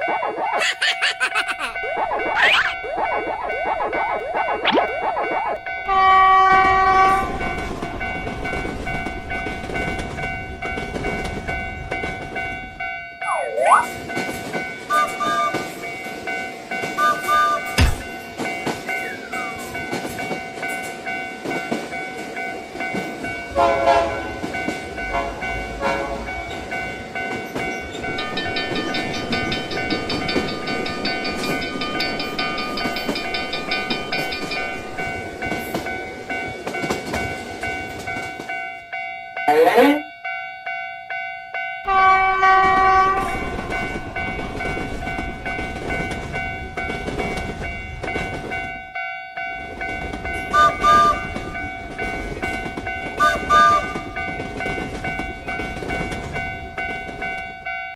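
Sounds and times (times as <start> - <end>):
cartoon effects: 0.0 - 6.3, 13.2 - 13.9
steady tones: 0.0 - 9.5
train running: 0.0 - 57.9
train horn blast: 5.9 - 7.4, 23.5 - 24.4, 25.1 - 26.3, 41.9 - 43.5, 50.5 - 51.3, 53.2 - 54.0.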